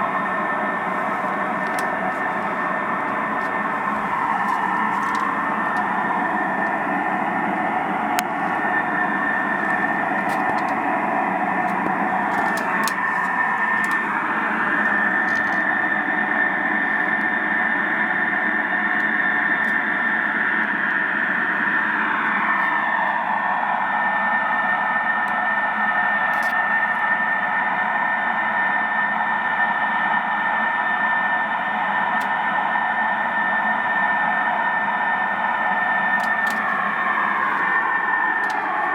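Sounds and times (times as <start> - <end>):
layered drone tones: 0.0 - 15.8
noisy hiss: 0.0 - 17.2
thin high whine: 0.0 - 17.2.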